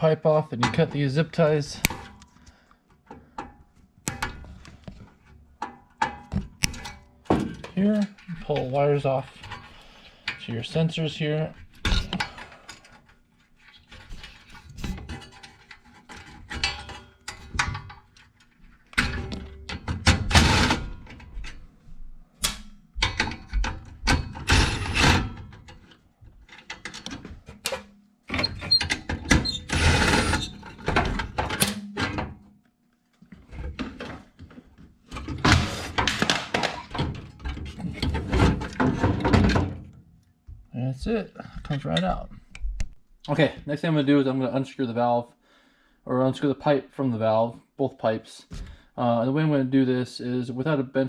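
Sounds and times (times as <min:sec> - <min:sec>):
metal clunks rattles and scrapes: 0:04.2 - 0:21.7, 0:23.0 - 0:32.4, 0:33.4 - 0:40.0.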